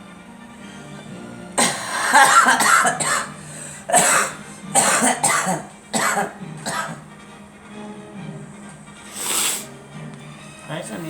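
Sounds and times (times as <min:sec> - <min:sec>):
person coughing: 0:01.6 - 0:07.0.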